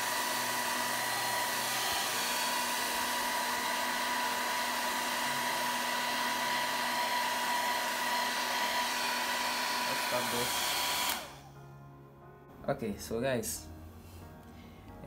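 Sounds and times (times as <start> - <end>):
hair dryer running: 0.0 - 11.5.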